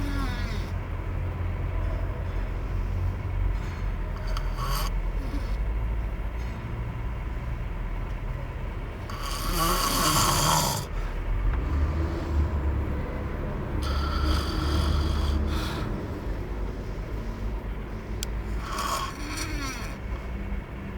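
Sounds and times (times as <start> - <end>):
man snoring: 0.0 - 0.7, 4.1 - 5.6, 9.0 - 11.0, 13.6 - 16.2, 18.5 - 20.1.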